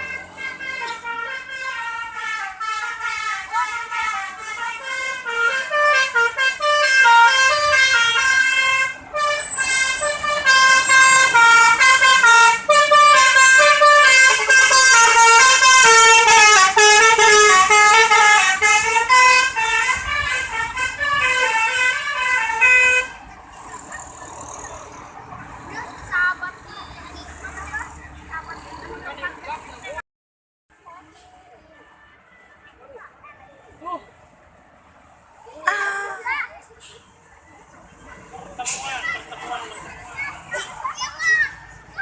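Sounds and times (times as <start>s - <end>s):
bus horn playing melody: 0.0s - 23.2s, 35.6s - 36.3s.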